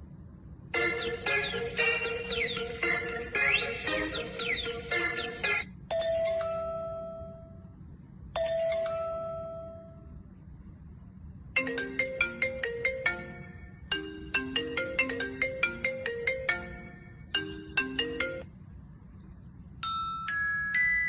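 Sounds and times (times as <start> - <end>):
electronic ringtone melody: 0.8 - 7.5, 8.4 - 10.1, 11.6 - 18.5
bright mallet-like melody: 8.4 - 10.1, 11.6 - 18.5, 19.8 - 21.0.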